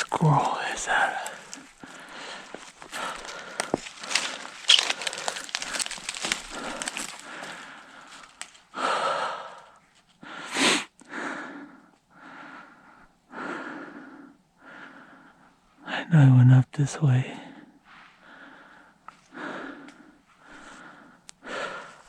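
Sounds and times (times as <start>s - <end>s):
footsteps on forest floor: 0.0s - 8.7s
man breathing heavily: 0.0s - 15.9s, 17.4s - 22.0s.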